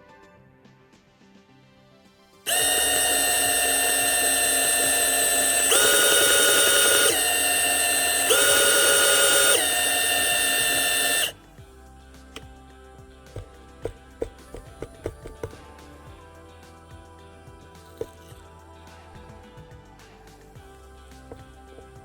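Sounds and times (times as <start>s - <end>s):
small electric drill motor whine: 2.5s - 11.4s.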